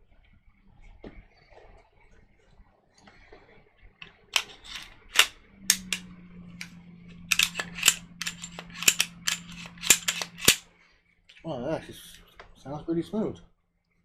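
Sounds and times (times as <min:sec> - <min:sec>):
pistol slide and trigger clacks: 0:04.4 - 0:06.7, 0:07.3 - 0:10.6.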